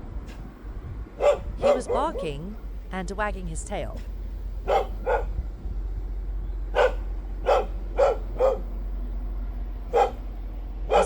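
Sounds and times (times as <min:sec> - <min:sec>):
dog barking: 0:01.2 - 0:02.4, 0:04.6 - 0:05.3, 0:06.7 - 0:08.7, 0:09.9 - 0:10.2.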